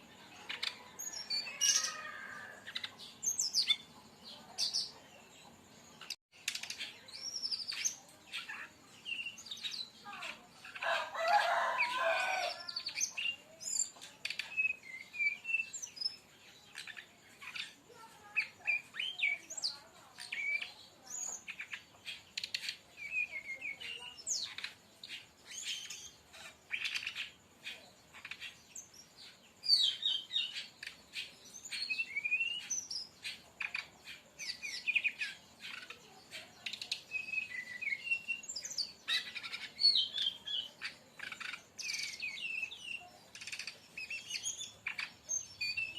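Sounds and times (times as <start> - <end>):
bird singing chirps and whistles: 12.8 - 17.8, 18.4 - 26.2, 29.6 - 36.0, 36.6 - 45.9.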